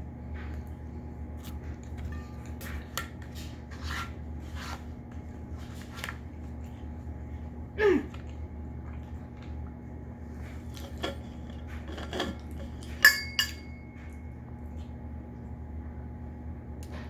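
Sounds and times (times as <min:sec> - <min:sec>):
steady low hum: 0:00.0 - 0:17.0
tableware clinking: 0:10.9 - 0:14.1.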